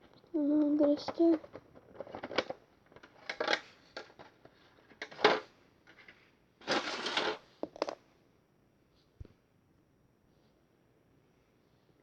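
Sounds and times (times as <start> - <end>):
scraping in a container: 6.6 - 7.4.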